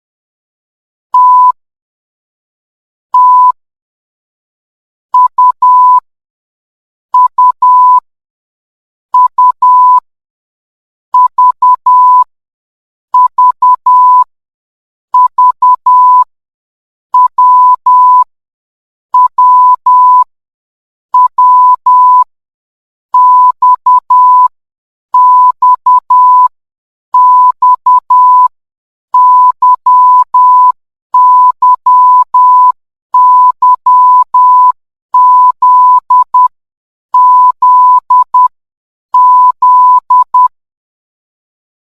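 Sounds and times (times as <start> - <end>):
morse code beeps: 1.2 - 1.6, 3.2 - 3.6, 5.2 - 6.0, 7.2 - 8.0, 9.2 - 10.0, 11.2 - 12.3, 13.2 - 14.3, 15.2 - 16.3, 17.2 - 18.3, 19.2 - 20.3, 21.2 - 22.3, 23.2 - 24.5, 25.2 - 26.5, 27.2 - 28.5, 29.2 - 36.6, 37.2 - 38.6, 39.2 - 40.6.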